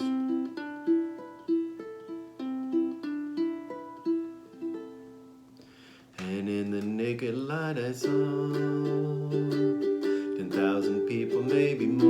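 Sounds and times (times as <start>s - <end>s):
ukulele picking single notes: 0.0s - 5.4s, 8.0s - 12.0s.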